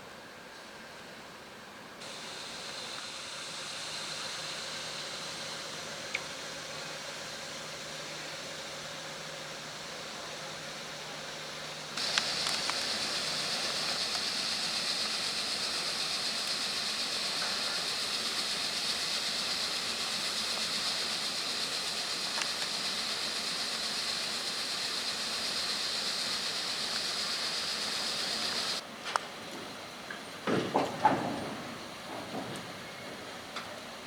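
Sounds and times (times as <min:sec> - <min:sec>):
freight train hissing: 0:00.0 - 0:34.0
faint clicks: 0:12.0 - 0:14.3.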